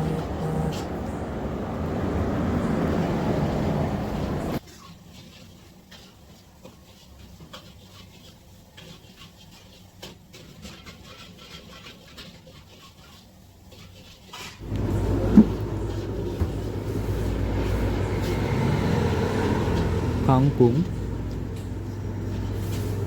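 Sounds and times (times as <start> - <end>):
steady low hum: 14.6 - 23.0.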